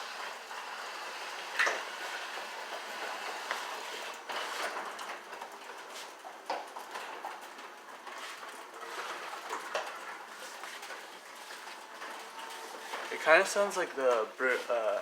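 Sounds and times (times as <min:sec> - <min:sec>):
garage door opener running: 0:00.0 - 0:14.2.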